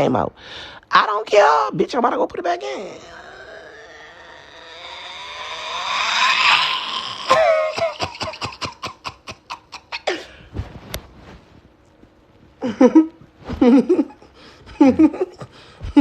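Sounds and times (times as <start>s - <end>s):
person laughing: 5.7s - 10.4s, 12.6s - 16.0s.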